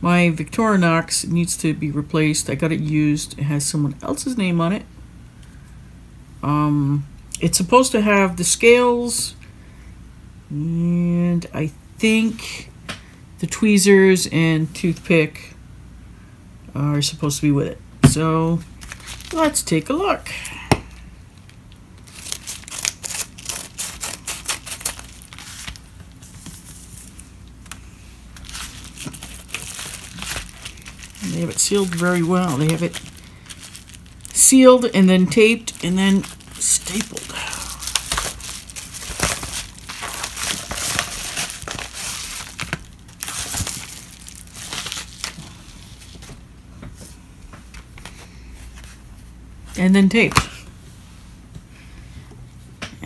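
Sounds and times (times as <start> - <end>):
packaging crinkling: 18.8 - 19.7, 21.3 - 46.2.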